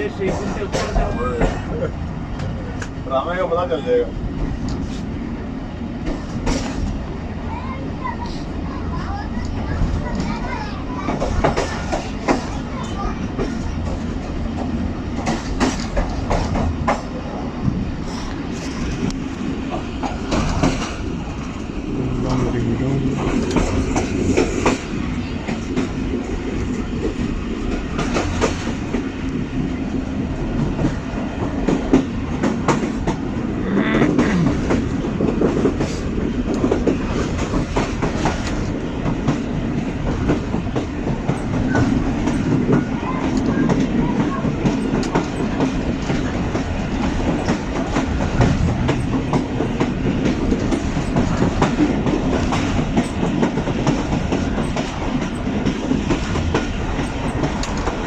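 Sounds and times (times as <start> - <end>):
clickety-clack of rail joints: 0.0 - 5.2, 5.9 - 58.0
train wheels rumbling on track: 0.0 - 58.0.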